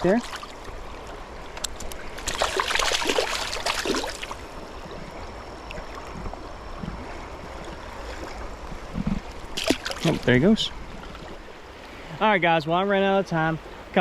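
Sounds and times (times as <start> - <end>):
river water rushing: 0.0 - 6.6
water splashing: 0.0 - 12.8.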